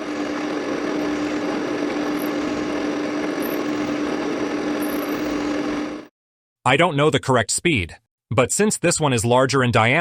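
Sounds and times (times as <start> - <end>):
drill press motor humming: 0.0 - 6.1.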